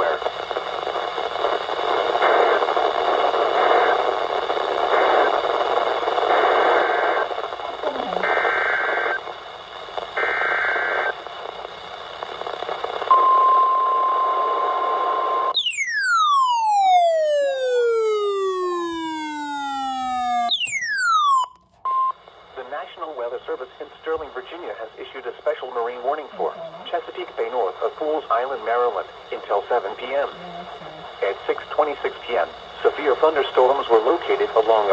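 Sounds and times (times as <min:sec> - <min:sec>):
radio static: 0:00.0 - 0:13.1, 0:15.6 - 0:21.7, 0:22.4 - 0:34.9
steady alert tone: 0:15.6 - 0:21.7
data tone bursts: 0:15.6 - 0:22.1.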